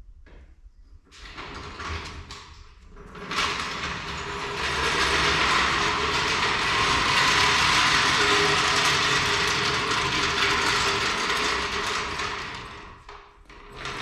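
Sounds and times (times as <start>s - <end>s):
jack wheels rolling on concrete: 1.2s - 14.0s.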